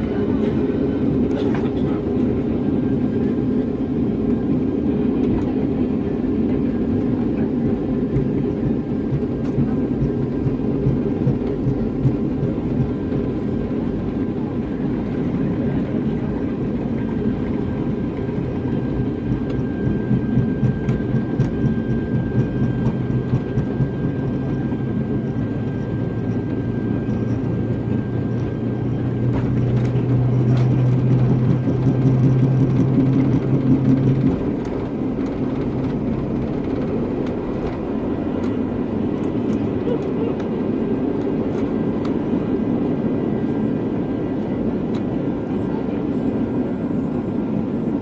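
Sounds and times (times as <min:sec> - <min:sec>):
airliner cabin rumble and whir: 0:00.0 - 0:48.0
low hum: 0:17.4 - 0:40.0.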